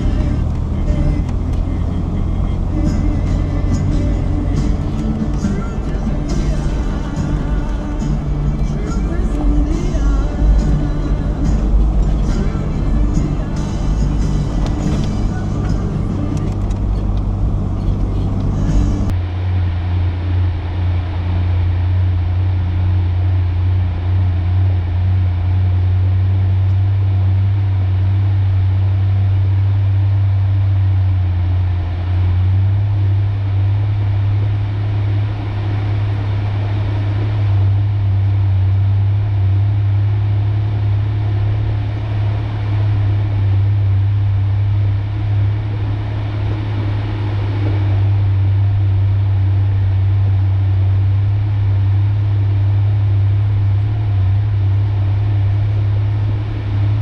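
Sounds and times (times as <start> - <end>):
music: 0.0 - 19.2
pickup truck engine and road noise: 0.0 - 57.0.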